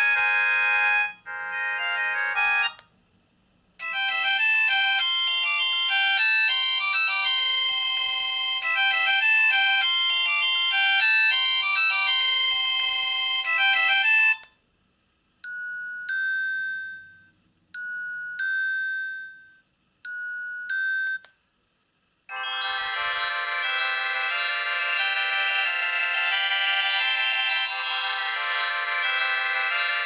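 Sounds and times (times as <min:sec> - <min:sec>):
phone ringtone melody: 0:00.0 - 0:02.8, 0:03.8 - 0:14.4, 0:22.3 - 0:30.0.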